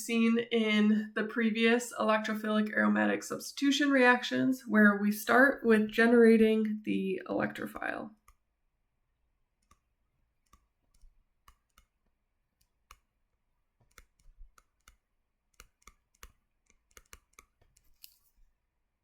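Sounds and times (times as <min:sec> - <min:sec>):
faint irregular clicks: 0:08.2 - 0:08.5, 0:09.6 - 0:13.2, 0:13.8 - 0:18.5.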